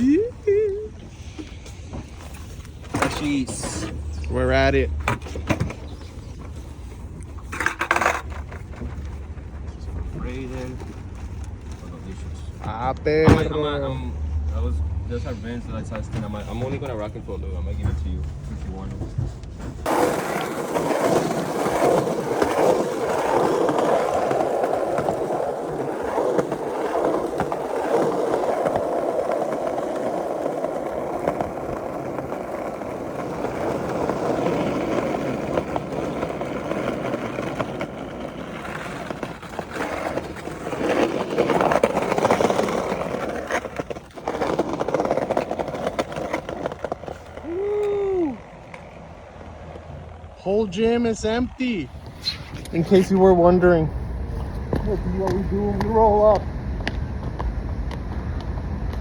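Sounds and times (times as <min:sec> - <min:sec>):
skateboard wheels rolling: 0:00.0 - 0:59.0
skateboard clacks: 0:07.4 - 0:09.7, 0:19.7 - 0:49.9, 0:54.4 - 0:59.0.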